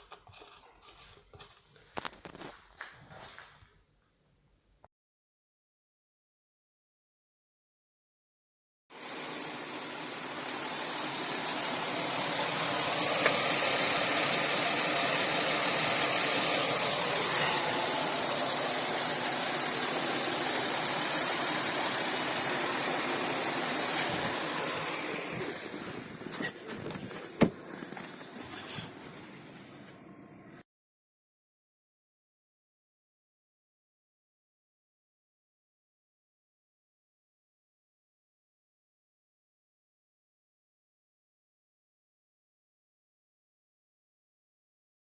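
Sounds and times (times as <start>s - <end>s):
engine running: 9.0s - 29.1s.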